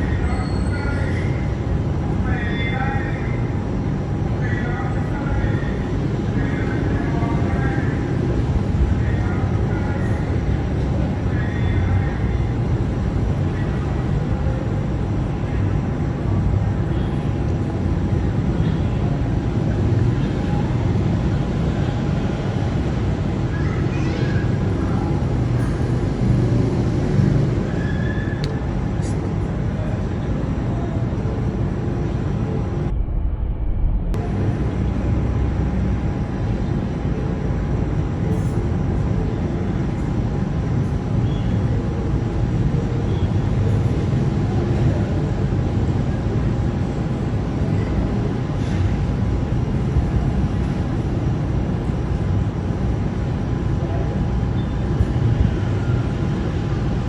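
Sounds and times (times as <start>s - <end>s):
thunderstorm rumble: 32.2s - 36.3s.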